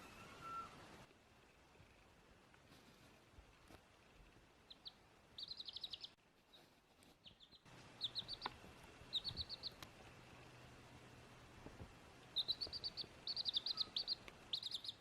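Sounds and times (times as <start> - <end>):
baby chick peeping: 4.6 - 10.6, 11.6 - 15.0.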